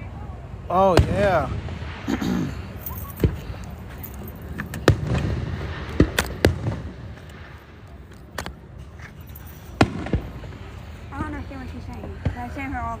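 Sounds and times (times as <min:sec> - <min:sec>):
fireworks bangs: 0:00.7 - 0:13.0.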